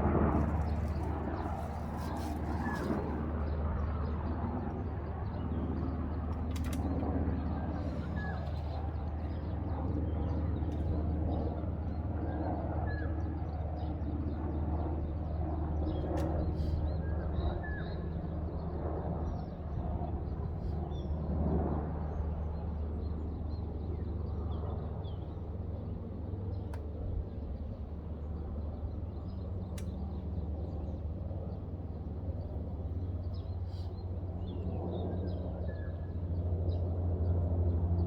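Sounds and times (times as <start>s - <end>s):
steady low hum: 0.0s - 13.3s.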